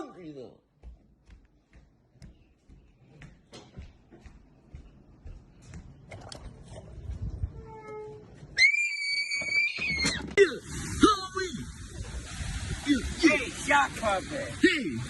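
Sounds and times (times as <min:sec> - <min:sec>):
high-pitched scream: 0:08.6 - 0:10.3.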